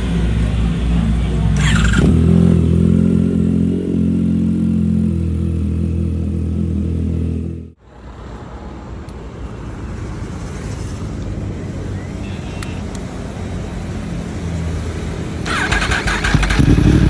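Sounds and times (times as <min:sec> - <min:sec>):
rough quiet motorcycle engine: 0:01.6 - 0:07.8, 0:15.5 - 0:17.0.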